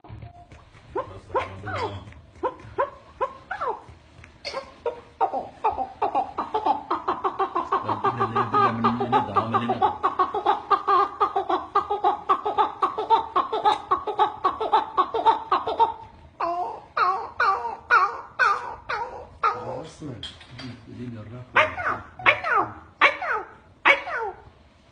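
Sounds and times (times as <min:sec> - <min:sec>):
person imitating partridge call: 0:21.6 - 0:24.4.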